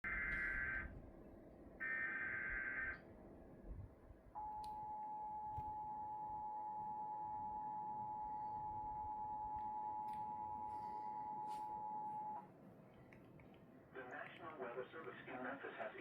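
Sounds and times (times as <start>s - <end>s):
buzzing data bursts: 0.0s - 0.9s, 1.8s - 3.0s
two-tone attention signal: 4.4s - 12.4s.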